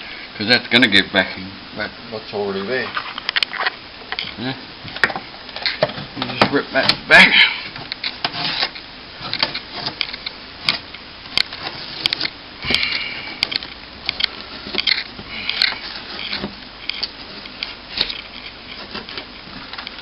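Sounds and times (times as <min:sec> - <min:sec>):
plasterboard tearing scrapes: 0:08.2 - 0:10.0.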